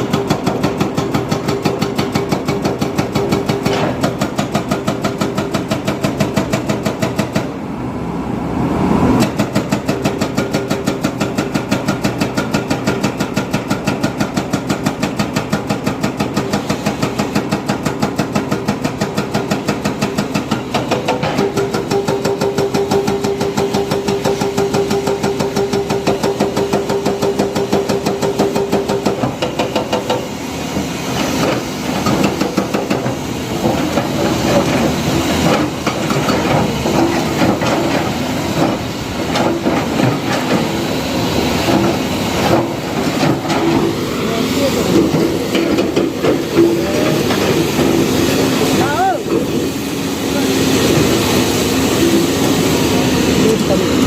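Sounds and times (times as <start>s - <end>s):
diesel engine knocking: 0.0s - 7.5s, 9.2s - 40.7s.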